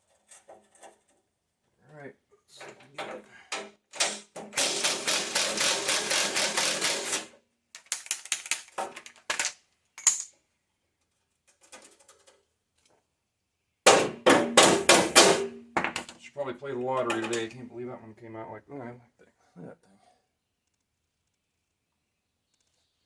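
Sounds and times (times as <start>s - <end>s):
sharp metal knocks: 13.9s - 16.1s.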